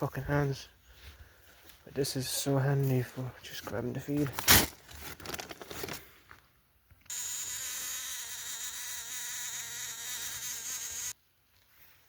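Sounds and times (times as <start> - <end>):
small electric motor buzzing: 7.1 - 11.2.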